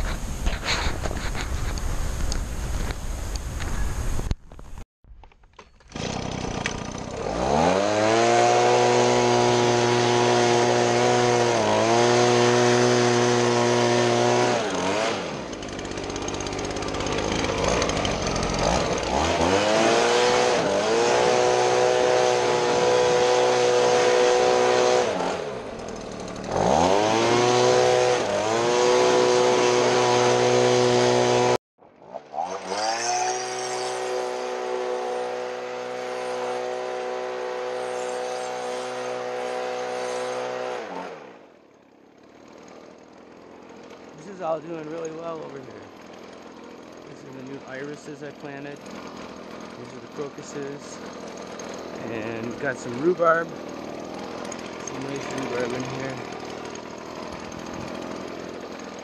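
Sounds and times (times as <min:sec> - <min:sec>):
leaf blower engine revving: 0:05.8 - 0:59.0.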